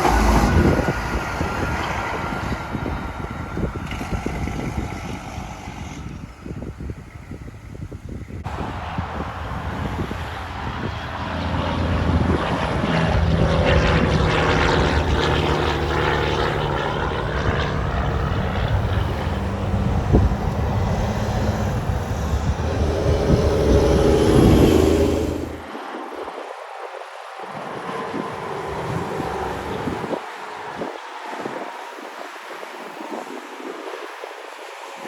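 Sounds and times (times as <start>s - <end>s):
truck diesel engine droning: 8.5s - 25.7s.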